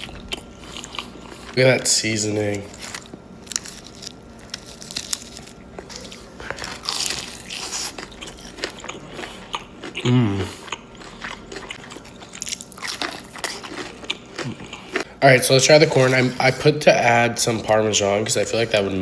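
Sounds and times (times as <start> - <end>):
crunchy bites and chewing: 0.0 - 15.2
person humming mm: 10.0 - 10.7.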